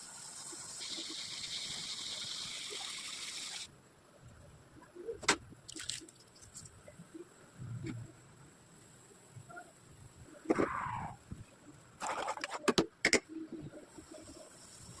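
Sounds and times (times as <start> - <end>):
water pouring into a pot: 0.2 - 3.7.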